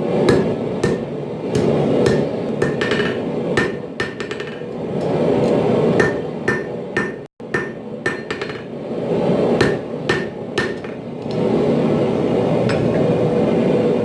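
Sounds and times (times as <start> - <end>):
hammer striking steel on anvil: 0.3 - 4.7, 6.0 - 8.8, 9.6 - 11.0.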